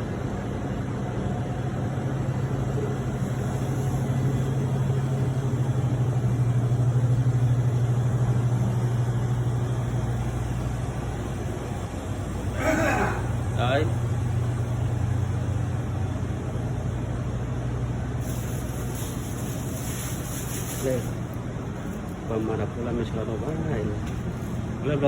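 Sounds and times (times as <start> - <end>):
low machine hum: 0.0 - 25.0.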